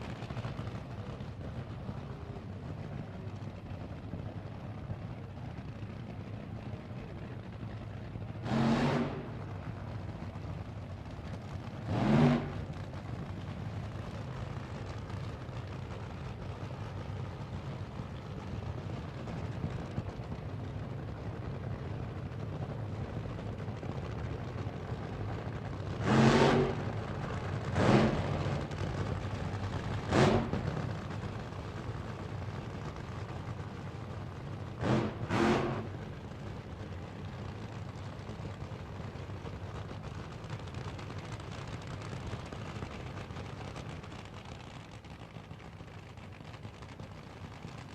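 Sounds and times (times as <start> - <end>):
low engine hum: 0.0 - 47.9
loud engine surges: 6.8 - 13.5, 21.1 - 40.4.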